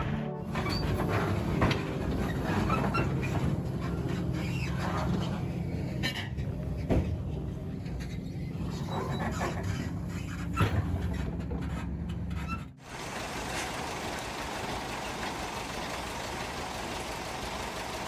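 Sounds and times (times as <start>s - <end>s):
loud clunk: 0.0s - 4.2s
heavy machine engine running: 0.0s - 18.0s.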